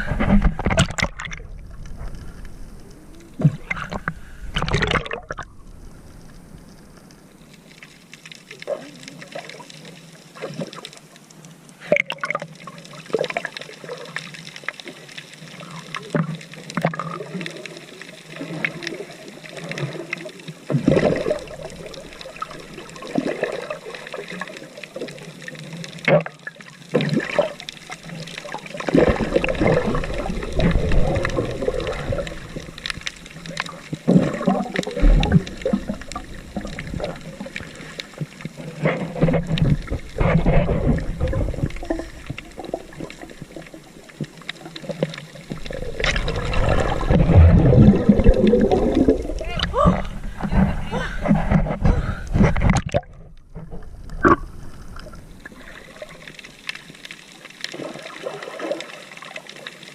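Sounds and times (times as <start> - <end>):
seawater sloshing and splashing: 26.1 - 54.4.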